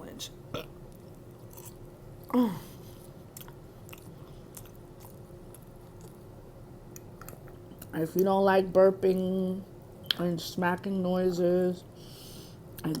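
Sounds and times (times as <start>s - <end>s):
chewing and mouth smacking: 0.9s - 1.9s, 3.0s - 6.3s, 6.9s - 8.3s.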